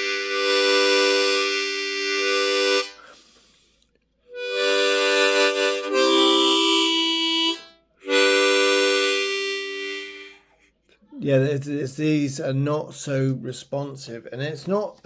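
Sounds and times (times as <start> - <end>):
harmonica held chords: 0.0 - 3.6, 4.3 - 10.7.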